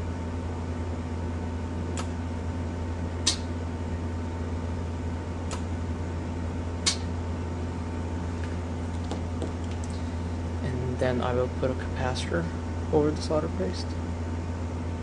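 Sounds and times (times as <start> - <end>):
low mechanical hum: 0.0 - 15.0
short sharp clicks: 3.2 - 3.5, 5.5 - 5.7, 6.8 - 7.1.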